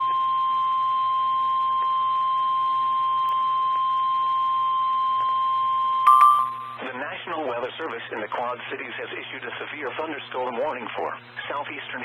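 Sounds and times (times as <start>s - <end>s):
steady alert beep: 6.1s - 6.8s.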